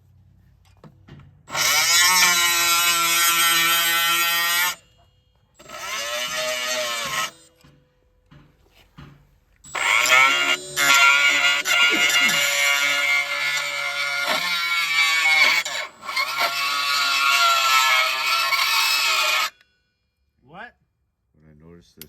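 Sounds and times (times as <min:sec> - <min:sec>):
power tool motor whining: 0:01.5 - 0:05.0, 0:05.6 - 0:07.8, 0:09.6 - 0:19.6.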